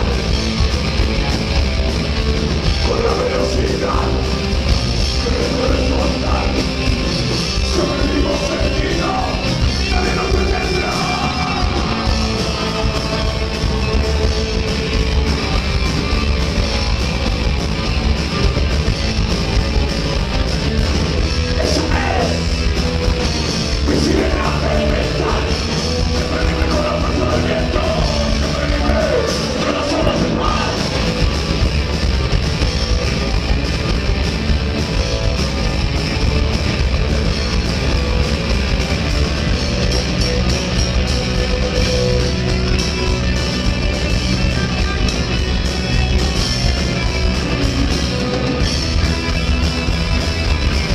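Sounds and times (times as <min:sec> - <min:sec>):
rock band playing live: 0:00.0 - 0:50.9
person singing: 0:05.2 - 0:06.8, 0:07.6 - 0:14.0, 0:21.6 - 0:22.5, 0:23.8 - 0:31.0.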